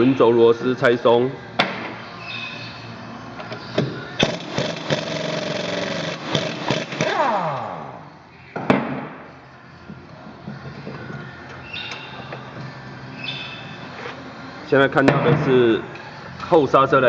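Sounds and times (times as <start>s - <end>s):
air impact wrench whining: 3.4s - 8.2s.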